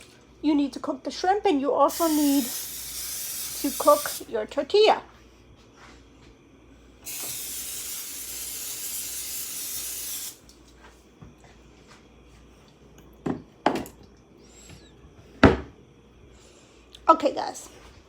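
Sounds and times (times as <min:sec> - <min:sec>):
cooking spray hissing: 0:01.9 - 0:04.3, 0:07.0 - 0:10.5.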